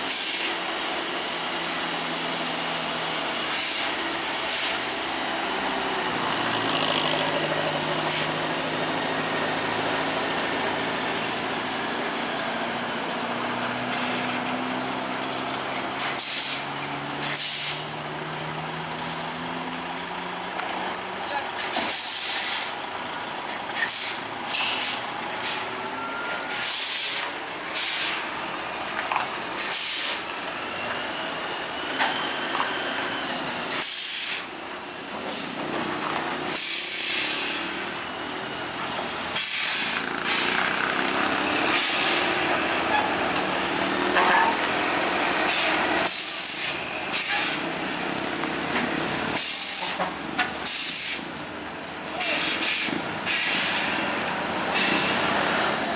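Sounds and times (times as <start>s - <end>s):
air brakes hissing: 0.0s - 0.8s, 3.2s - 6.0s, 7.5s - 13.9s, 15.8s - 18.2s, 21.6s - 22.8s, 23.5s - 28.4s, 29.5s - 47.7s, 49.2s - 51.4s, 52.1s - 55.9s
truck engines running: 0.0s - 55.9s.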